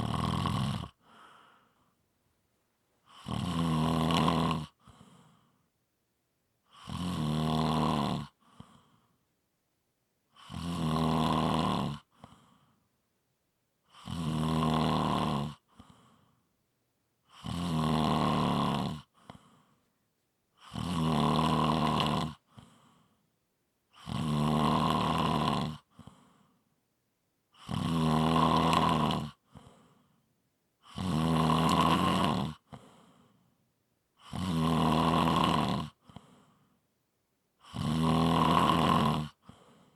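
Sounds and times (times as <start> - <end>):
person snoring: 0.0 - 1.6, 3.0 - 5.0, 6.7 - 8.9, 10.4 - 12.4, 13.9 - 15.9, 17.3 - 19.5, 20.6 - 22.8, 24.0 - 26.4, 27.6 - 29.9, 30.8 - 33.2, 34.2 - 36.3, 37.6 - 39.9
faint breath: 0.9 - 2.1, 4.8 - 5.7, 8.4 - 9.3, 12.0 - 12.9, 15.6 - 16.5, 19.1 - 19.9, 22.5 - 23.3, 25.9 - 26.7, 29.4 - 30.3, 32.7 - 33.6, 36.0 - 36.9, 39.4 - 39.9.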